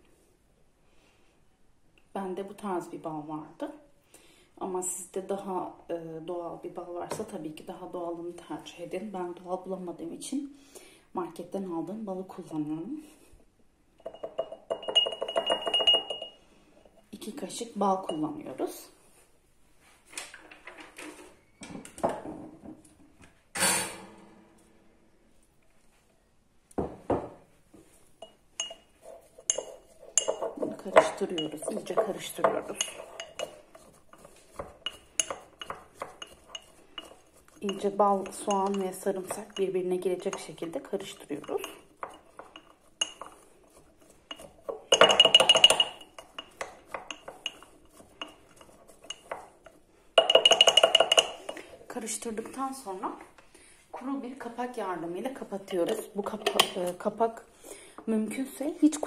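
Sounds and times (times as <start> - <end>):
kitchenware knocking: 14.0 - 16.3, 44.9 - 46.1, 50.2 - 51.4
spoon clinking against glass jar: 14.0 - 16.4, 28.2 - 51.7.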